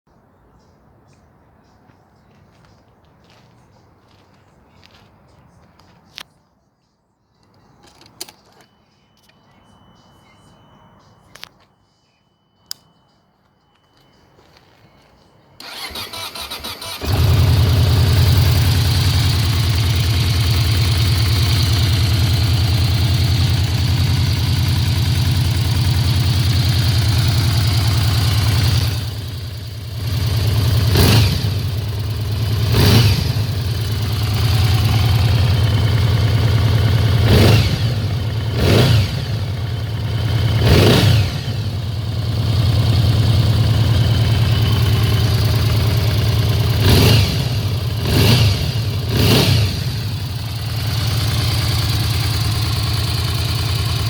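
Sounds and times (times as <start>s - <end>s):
click: 12.6s - 12.9s
starter motor cranking: 15.6s - 17.4s
motorcycle engine idling and revving: 15.6s - 54.0s.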